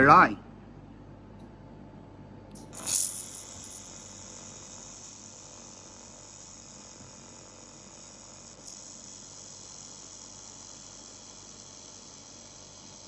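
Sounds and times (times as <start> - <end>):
laser welding machine hissing: 2.7 - 13.0.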